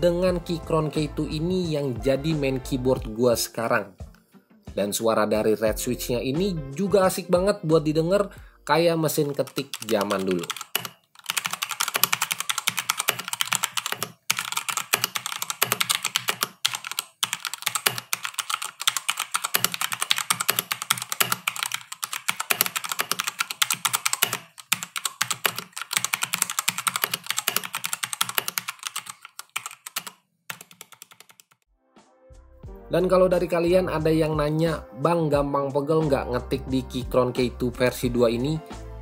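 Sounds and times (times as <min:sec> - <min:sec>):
fast typing on mechanical keyboard: 0:09.1 - 0:31.6.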